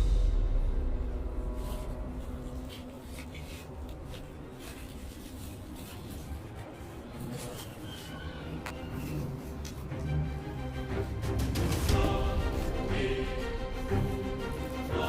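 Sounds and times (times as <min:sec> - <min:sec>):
background music: 0:00.0 - 0:15.0
packaging rustling and scraping: 0:01.6 - 0:10.3.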